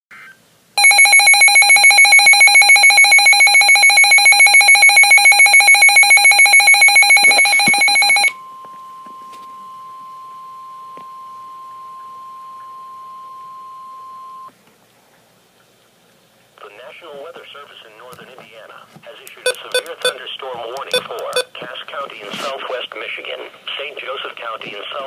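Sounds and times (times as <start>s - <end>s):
rapidly pulsing alarm tone: 0.8s - 14.5s
steady single-pitch alert tone: 0.8s - 14.5s.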